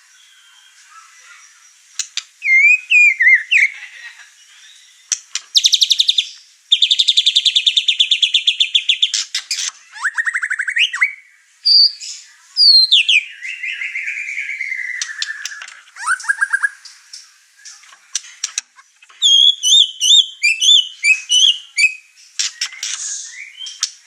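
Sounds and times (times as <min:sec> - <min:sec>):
songbird whistling and trilling: 0:02.0 - 0:03.8, 0:04.9 - 0:16.9, 0:19.1 - 0:24.0.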